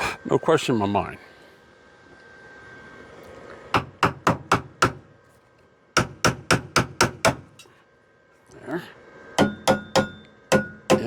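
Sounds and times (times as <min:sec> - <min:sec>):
hammer on sheet steel: 0:06.0 - 0:07.4, 0:09.4 - 0:11.0.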